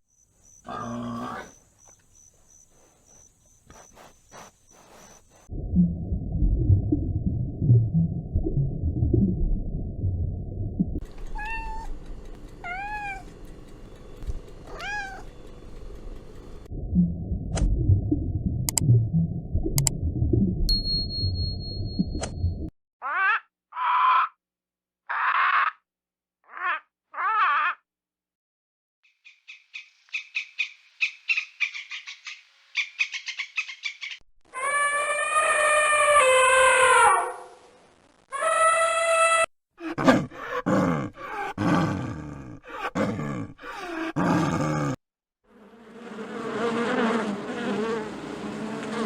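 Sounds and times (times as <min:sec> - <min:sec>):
animal clicking call: 0:11.0 - 0:16.5
cat meowing: 0:11.3 - 0:11.9, 0:12.6 - 0:13.3, 0:14.7 - 0:15.3.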